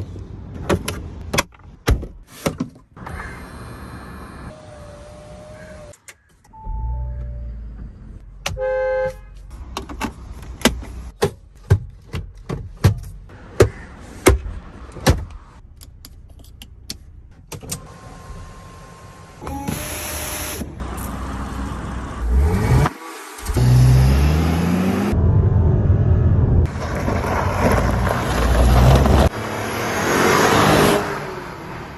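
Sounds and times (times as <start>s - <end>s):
car horn toot: 8.5s - 9.4s.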